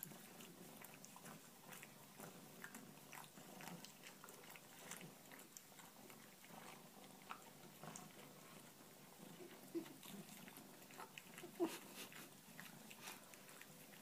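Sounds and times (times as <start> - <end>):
pet chewing wet clicks: 0.0 - 8.4.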